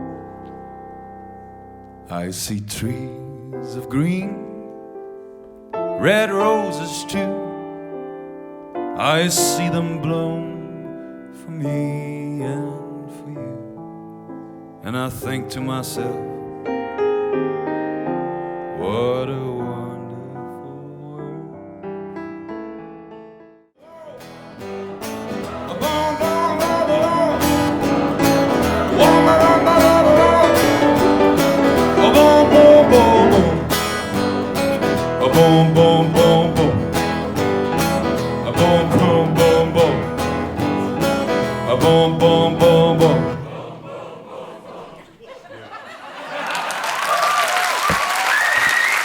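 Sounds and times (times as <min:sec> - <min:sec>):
person singing: 0:02.1 - 0:04.6, 0:06.0 - 0:07.6, 0:09.0 - 0:13.8, 0:18.7 - 0:21.7, 0:23.8 - 0:45.0
guitar playing: 0:23.8 - 0:44.1
audience applause: 0:24.0 - 0:32.5, 0:46.2 - 0:49.0.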